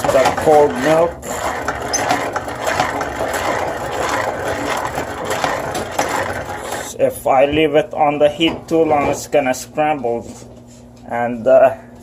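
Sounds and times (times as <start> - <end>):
batter machine rattling: 0.0 - 7.0.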